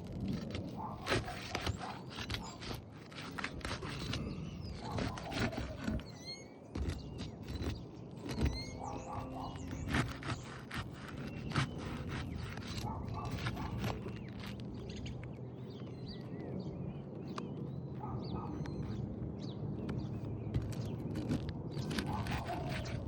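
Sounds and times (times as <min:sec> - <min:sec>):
shingles being pried up: 0:00.0 - 0:14.8, 0:20.5 - 0:23.0
birds chirping: 0:00.0 - 0:23.0.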